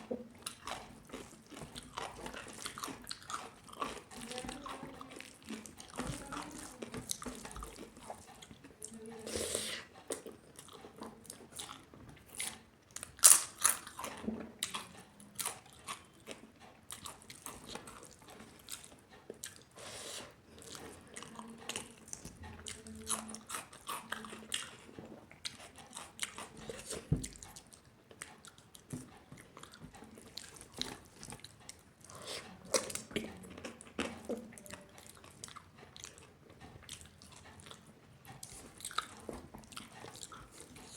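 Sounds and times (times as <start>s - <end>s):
chewing and crunching food: 0.0s - 40.9s.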